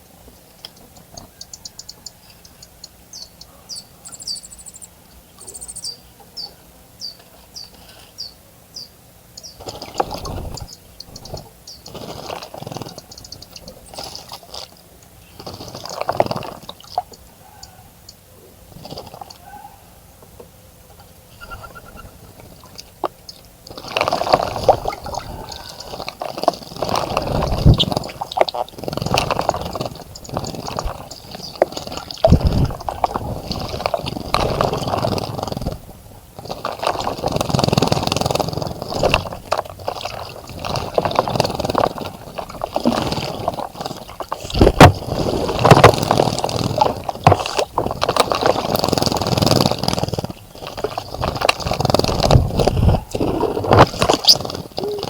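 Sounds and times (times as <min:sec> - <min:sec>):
bird splashing in water: 0:21.6 - 0:35.7.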